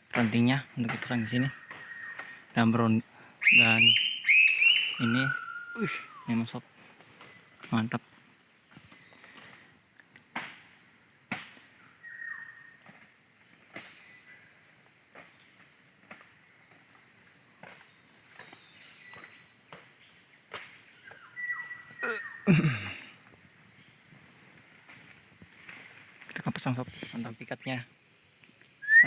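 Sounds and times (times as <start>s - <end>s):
insects droning: 0.0s - 29.0s
whistled bird notes: 3.4s - 6.6s, 21.0s - 22.5s, 28.8s - 29.0s.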